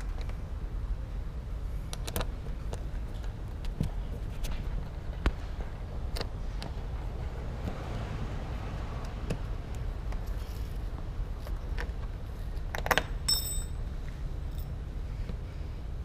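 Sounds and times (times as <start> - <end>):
low steady rumble: 0.0 - 16.0
bright metallic ring: 13.3 - 13.8.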